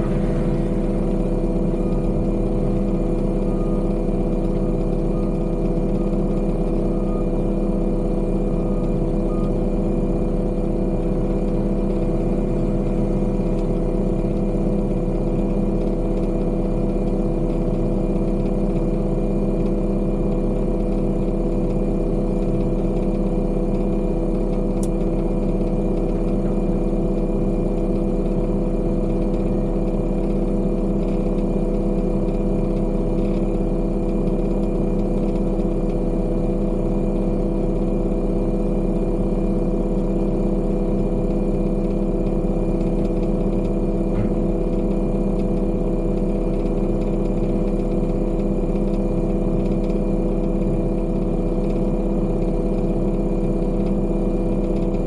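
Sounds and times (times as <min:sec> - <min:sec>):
heavy diesel engine running: 0:00.0 - 0:55.0.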